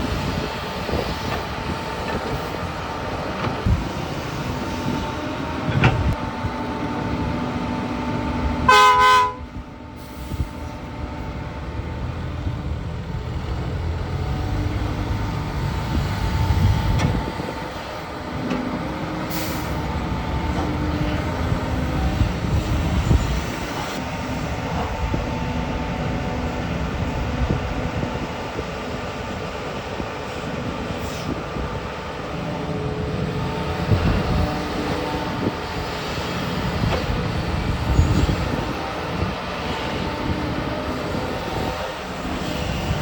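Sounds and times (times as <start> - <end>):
diesel engines running: 0.0 - 43.0
vehicle horn: 8.7 - 9.6.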